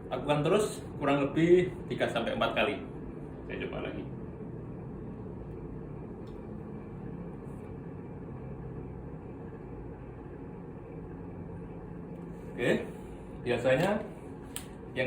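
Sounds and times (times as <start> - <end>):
low room hum: 0.0 - 15.0.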